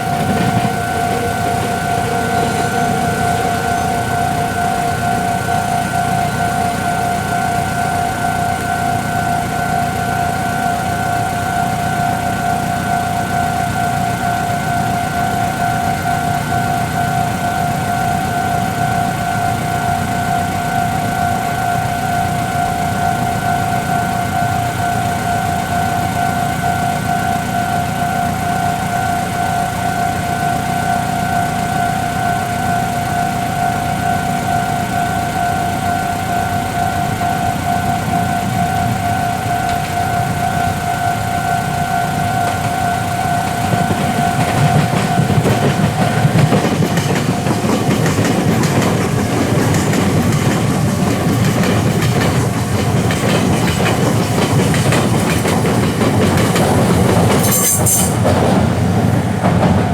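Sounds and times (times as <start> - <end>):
level-crossing warning bell: 0.0 - 59.9
train rumble: 0.0 - 59.9
train wheels on rails: 0.0 - 59.9.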